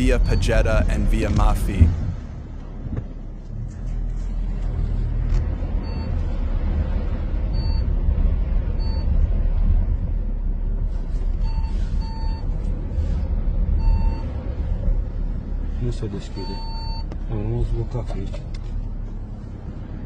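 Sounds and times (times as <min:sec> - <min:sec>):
vehicle warning beep: 0:00.0 - 0:01.9, 0:05.8 - 0:06.2, 0:07.5 - 0:07.9, 0:08.8 - 0:09.2, 0:11.3 - 0:12.6, 0:13.8 - 0:14.4, 0:16.2 - 0:17.1
loud low rumble: 0:00.0 - 0:18.0.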